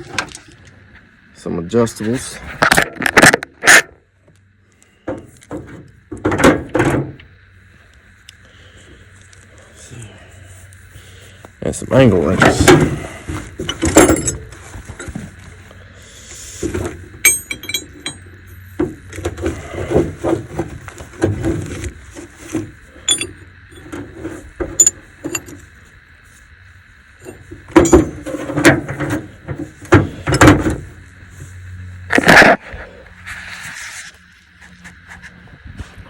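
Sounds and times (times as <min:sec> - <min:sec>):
faint steady hum: 0:00.0 - 0:36.0
metal tools clinking: 0:13.6 - 0:15.1, 0:17.2 - 0:18.3, 0:23.1 - 0:23.9, 0:24.8 - 0:25.6, 0:27.2 - 0:28.4.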